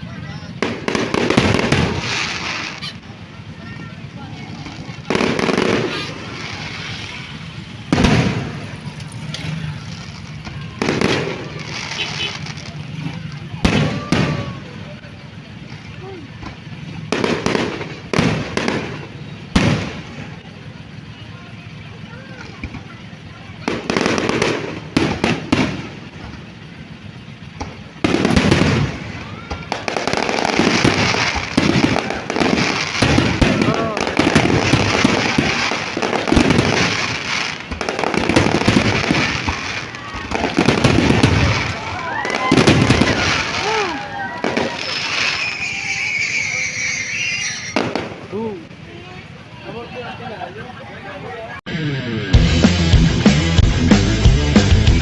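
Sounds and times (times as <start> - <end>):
firework shells bursting: 0.6 - 3.5, 22.4 - 48.4.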